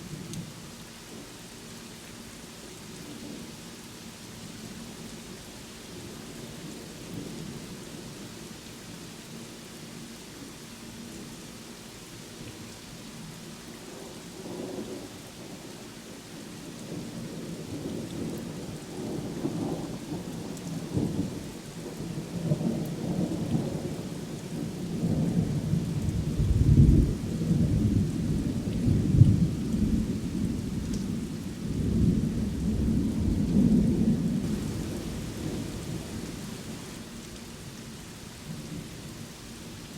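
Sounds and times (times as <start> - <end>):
steady rain: 0.0 - 39.9
rolling thunder: 31.7 - 37.0.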